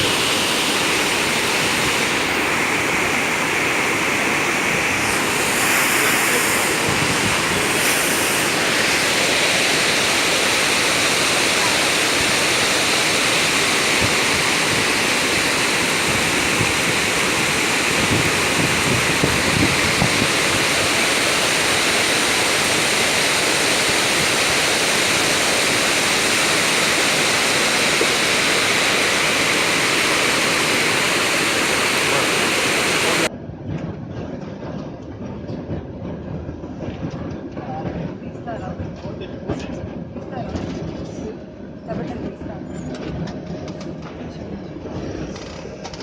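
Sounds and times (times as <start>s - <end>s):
floodwater rushing: 0.0s - 33.3s
dull rumble: 0.0s - 46.0s.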